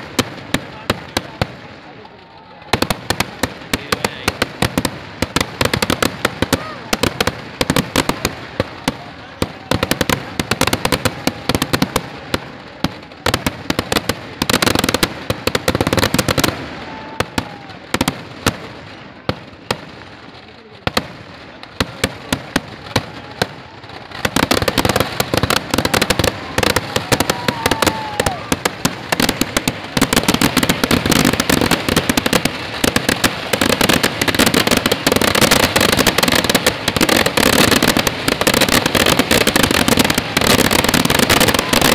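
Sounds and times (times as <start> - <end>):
firecracker bangs: 20.9 - 41.9.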